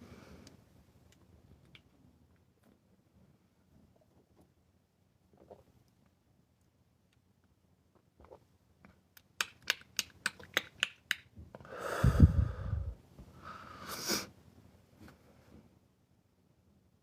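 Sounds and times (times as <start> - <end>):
hissing breath: 11.7 - 14.3.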